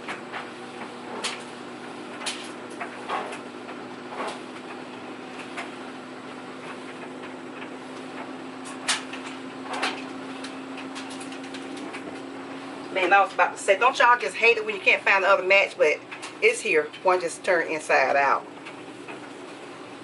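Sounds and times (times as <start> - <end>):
clicks and rustles of laundry: 0.0 - 5.9, 6.5 - 12.3
appliance humming: 0.0 - 20.0.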